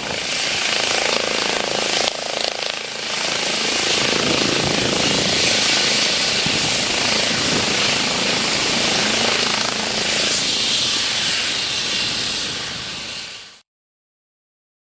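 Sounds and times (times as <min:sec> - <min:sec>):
helicopter rotor rush: 0:00.0 - 0:13.6
helicopter turbine whine: 0:00.0 - 0:13.6.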